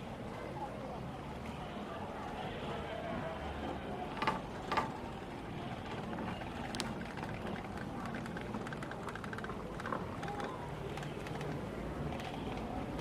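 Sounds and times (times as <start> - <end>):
faint clicks: 6.3 - 13.0.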